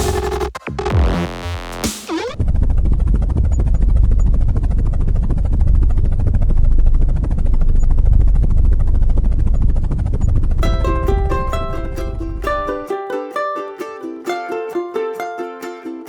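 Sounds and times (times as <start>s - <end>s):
helicopter rotor chopping: 2.1s - 12.9s.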